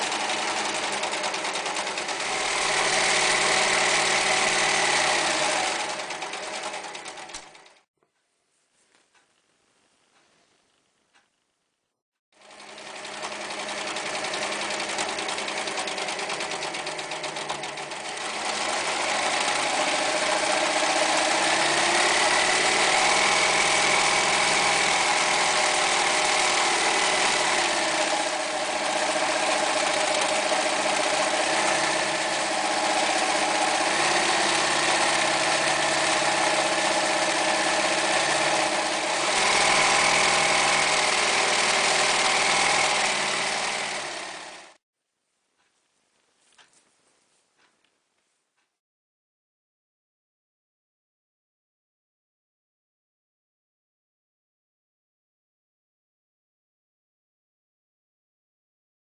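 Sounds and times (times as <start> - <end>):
overlocker sewing machine running: 0.0 - 7.9, 12.4 - 44.8.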